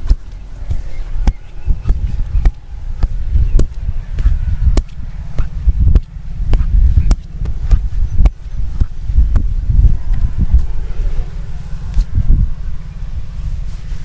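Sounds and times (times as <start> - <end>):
hand strikes on body: 0.0 - 9.5
low thudding rumble: 0.0 - 14.0.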